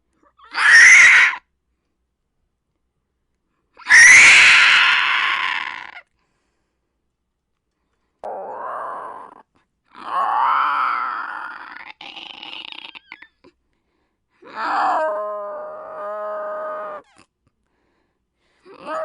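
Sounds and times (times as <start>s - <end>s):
low growl: 8.2s - 10.4s
person roaring like a monster: 8.2s - 13.0s, 14.5s - 17.0s, 18.7s - 19.0s.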